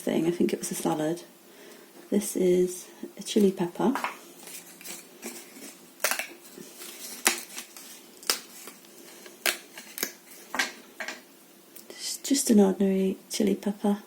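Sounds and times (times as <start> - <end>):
seed packets clicking and tapping: 4.0 - 10.8.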